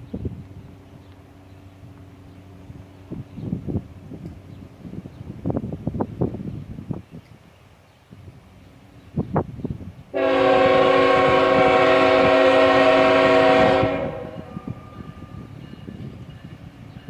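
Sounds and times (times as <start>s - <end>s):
train horn blast: 10.1s - 15.5s.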